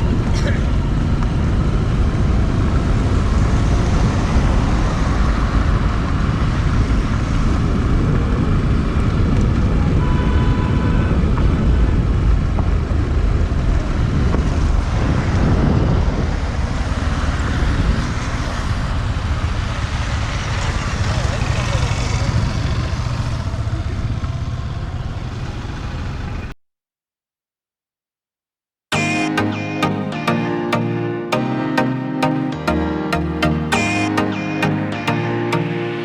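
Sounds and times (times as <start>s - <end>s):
vehicle and road noise: 0.0s - 26.5s.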